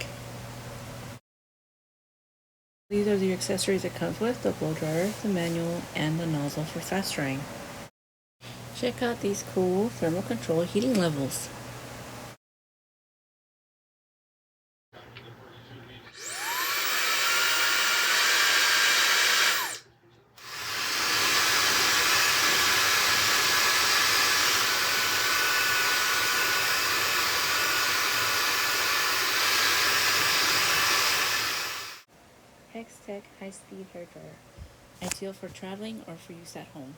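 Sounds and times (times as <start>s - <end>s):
hair dryer running: 9.2s - 11.6s, 16.2s - 19.8s, 20.4s - 32.1s.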